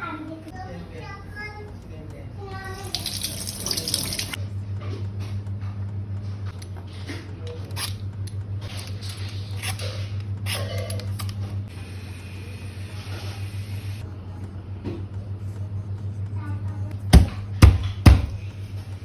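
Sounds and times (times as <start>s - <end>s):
handling clicks and scrapes: 6.5s - 11.6s.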